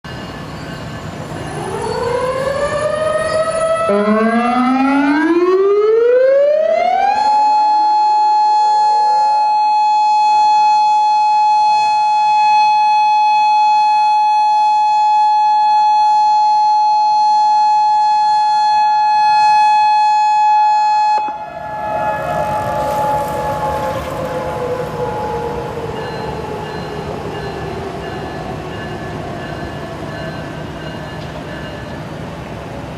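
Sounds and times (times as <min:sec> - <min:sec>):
civil defense siren: 0:01.0 - 0:31.5
rushing noise: 0:21.2 - 0:32.9.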